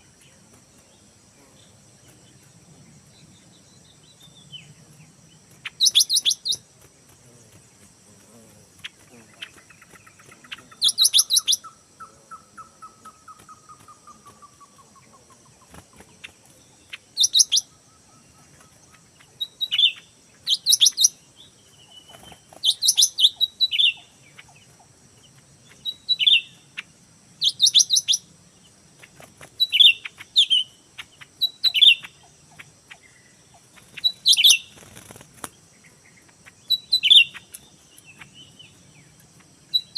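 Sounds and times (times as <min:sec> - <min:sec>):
high insect whine: 0:00.0 - 0:39.9
birds chirping and whistling: 0:05.6 - 0:06.6, 0:09.4 - 0:11.8, 0:12.4 - 0:24.1, 0:25.8 - 0:26.6, 0:29.6 - 0:32.1, 0:33.0 - 0:35.2, 0:36.1 - 0:38.8.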